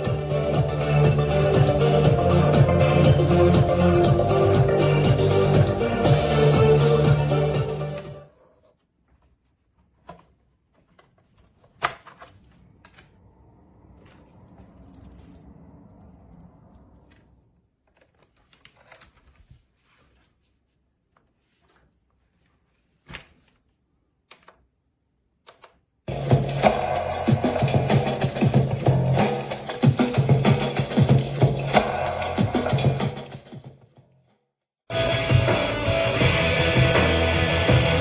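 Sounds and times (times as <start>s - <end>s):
music: 0.0s - 8.3s, 26.1s - 34.1s, 34.9s - 38.0s
soft rustle: 18.0s - 23.7s.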